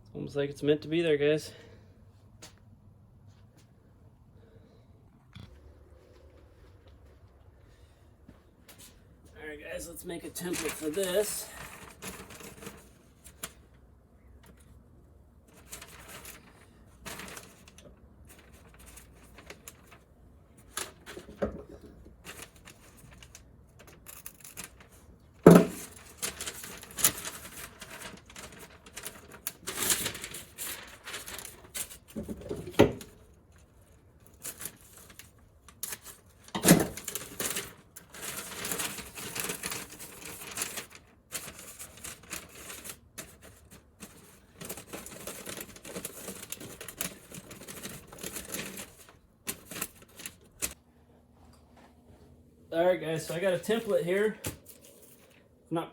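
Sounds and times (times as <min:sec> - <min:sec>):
paper rustling and tearing: 0:10.1 - 0:13.6, 0:15.4 - 0:21.4, 0:22.2 - 0:50.8.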